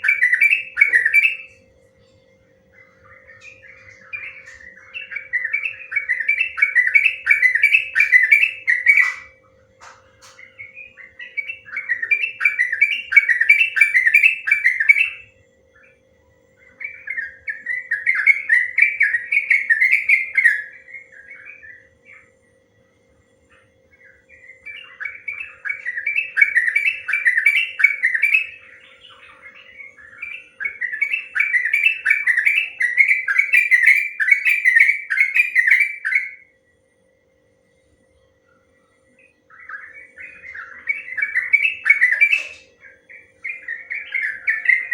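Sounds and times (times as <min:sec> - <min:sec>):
bulbul warbling song: 0:00.0 - 0:15.9, 0:23.9 - 0:36.4, 0:39.1 - 0:44.9
faint steady hum: 0:00.0 - 0:44.9.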